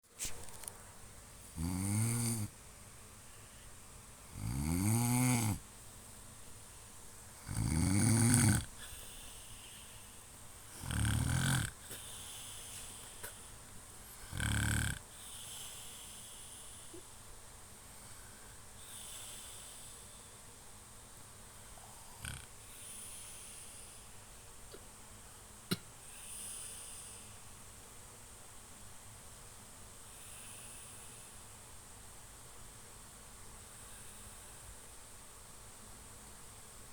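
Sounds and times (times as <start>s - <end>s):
man snoring: 1.5s - 2.5s, 4.3s - 5.6s, 7.4s - 10.0s, 10.7s - 13.4s, 14.2s - 17.0s, 22.1s - 23.0s
soft breathing: 3.2s - 4.0s, 8.6s - 17.2s, 17.8s - 20.5s, 21.5s - 27.6s, 33.7s - 34.9s.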